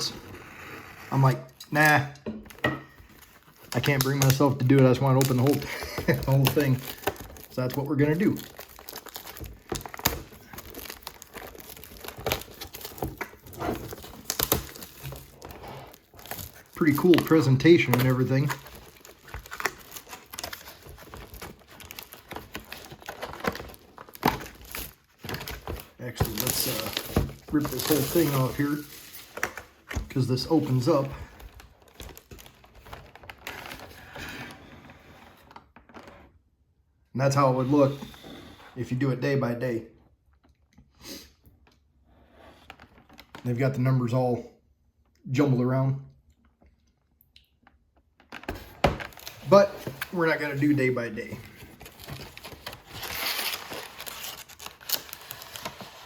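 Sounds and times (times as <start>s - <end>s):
packaging crinkling and tearing: 2.5s - 34.1s, 48.3s - 56.0s.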